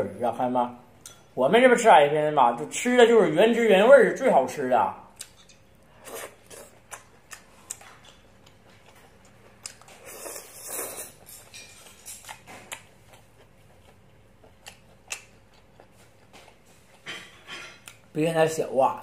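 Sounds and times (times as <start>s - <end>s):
person chewing squid: 5.1s - 18.1s.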